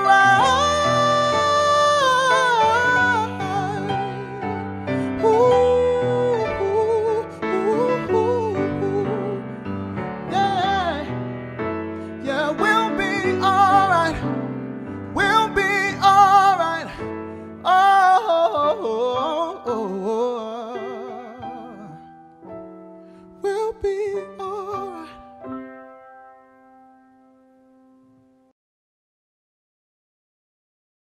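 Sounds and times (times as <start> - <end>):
male singer wordless vocal runs: 0.0 - 11.2, 12.1 - 22.1, 23.4 - 25.3.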